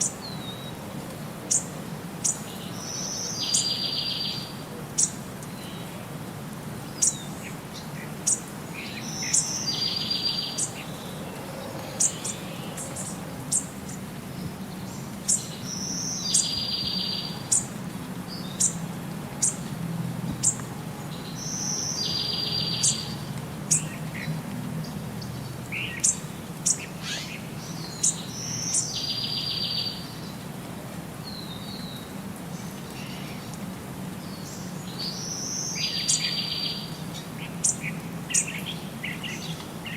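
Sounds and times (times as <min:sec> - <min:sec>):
birds chirping: 0:06.8 - 0:19.7, 0:20.3 - 0:30.4, 0:31.2 - 0:39.9.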